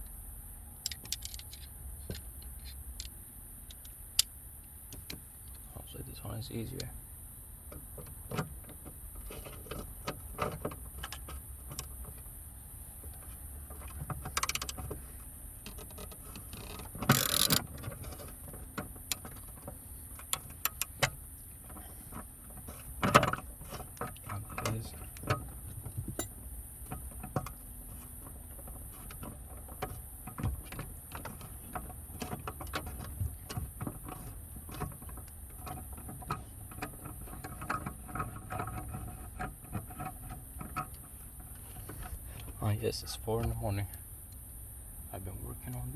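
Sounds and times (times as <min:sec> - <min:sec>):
metal clicks and clinks: 0:15.7 - 0:18.3
tools clattering: 0:15.7 - 0:41.0.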